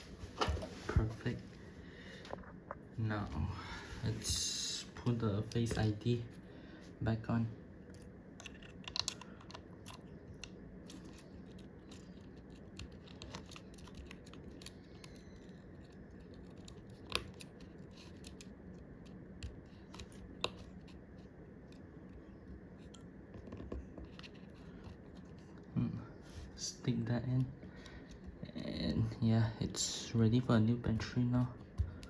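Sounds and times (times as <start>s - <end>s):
tweezers scratching and clicking: 9.8s - 23.0s.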